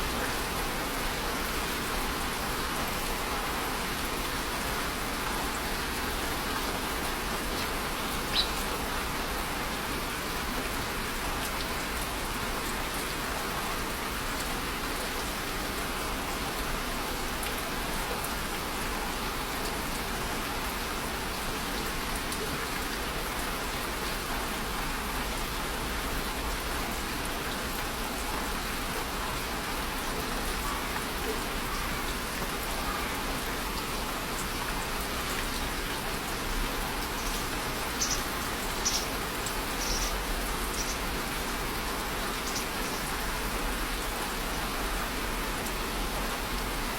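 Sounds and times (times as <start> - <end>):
steady rain hiss: 0.0 - 46.9.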